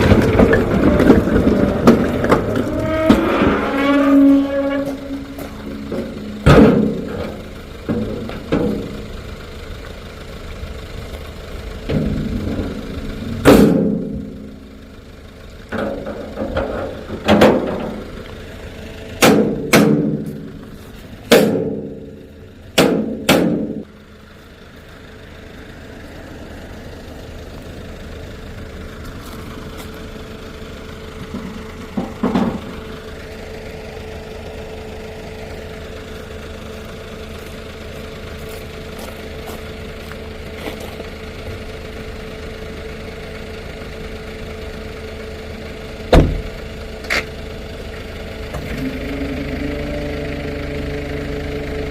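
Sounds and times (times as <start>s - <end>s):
truck engine idling: 0.0s - 51.9s
logs landing with heavy knocks: 6.4s - 7.1s, 13.4s - 14.2s, 19.2s - 20.4s, 21.3s - 21.9s, 22.8s - 23.8s, 46.1s - 46.5s.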